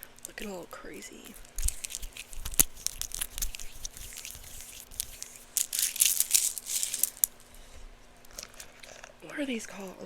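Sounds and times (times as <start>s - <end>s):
crinkly rustling: 1.1s - 7.5s.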